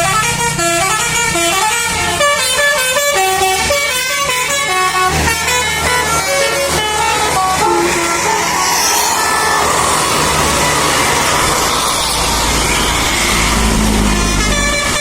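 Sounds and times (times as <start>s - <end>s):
bus horn playing a melody: 0.0s - 8.9s, 13.8s - 15.0s.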